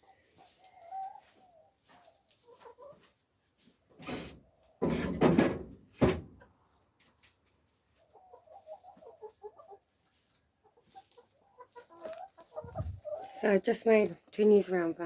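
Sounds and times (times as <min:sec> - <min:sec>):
hens clucking softly: 0:00.0 - 0:03.5, 0:06.4 - 0:13.5
rough rustling noise: 0:09.8 - 0:13.4.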